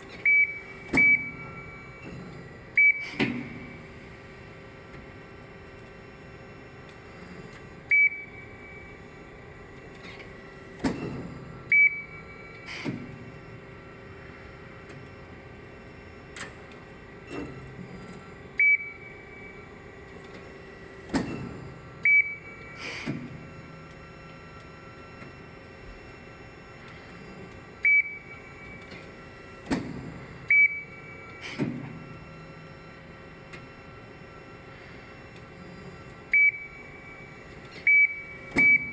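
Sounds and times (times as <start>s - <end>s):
hydraulic system hum: 0.0s - 38.9s
sharp machine clunks: 2.9s - 3.7s, 37.7s - 38.9s.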